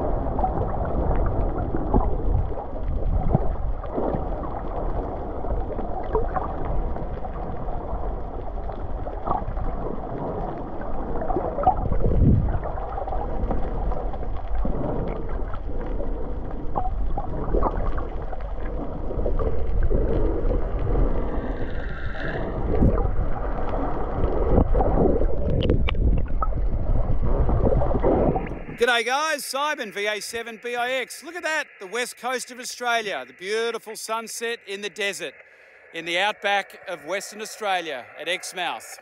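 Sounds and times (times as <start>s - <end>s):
wind buffeting microphone: 11.6s - 13.9s, 19.2s - 28.8s.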